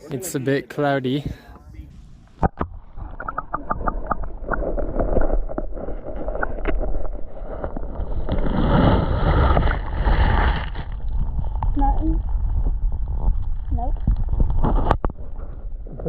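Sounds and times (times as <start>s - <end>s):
wind on microphone: 1.2s - 16.0s.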